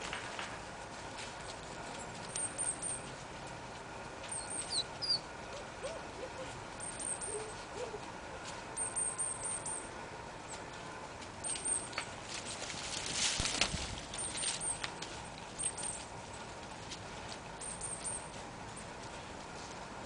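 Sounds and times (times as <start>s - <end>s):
small bird chirping: 4.3s - 8.0s.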